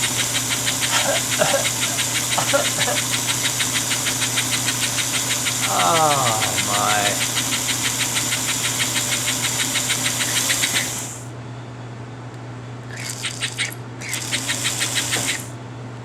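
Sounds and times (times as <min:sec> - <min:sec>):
model steam locomotive clicking: 0:00.0 - 0:05.8, 0:06.4 - 0:11.2, 0:12.9 - 0:15.5
hiss: 0:00.0 - 0:11.2
steady low hum: 0:00.0 - 0:16.0.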